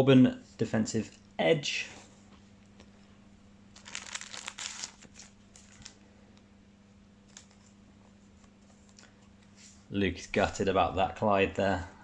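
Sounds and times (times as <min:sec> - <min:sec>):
plastic and card crinkling: 0:03.7 - 0:06.0, 0:07.2 - 0:07.8.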